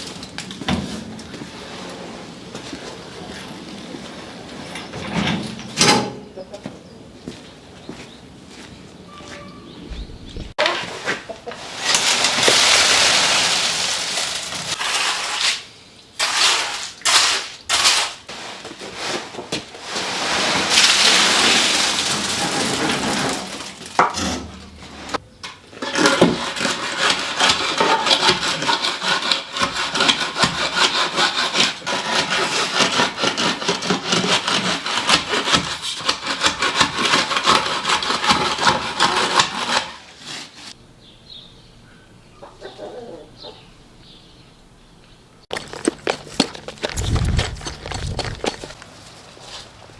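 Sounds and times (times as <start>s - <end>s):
hand tools scraping: 10.6s - 40.8s, 45.5s - 49.9s.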